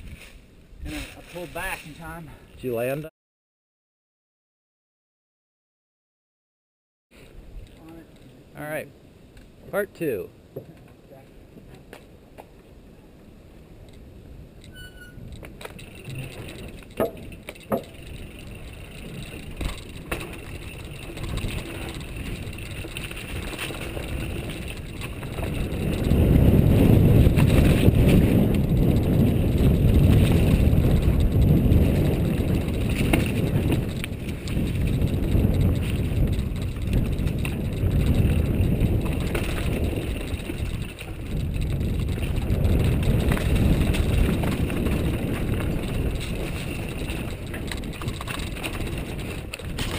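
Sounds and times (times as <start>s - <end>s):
bicycle tyre and drivetrain noise: 0.0s - 2.9s, 10.5s - 49.9s
wind rumble on microphone: 13.3s - 49.9s.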